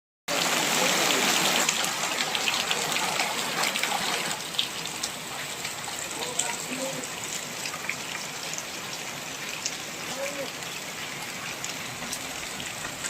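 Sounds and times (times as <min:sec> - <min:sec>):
heavy rain pouring: 0:00.3 - 0:13.0.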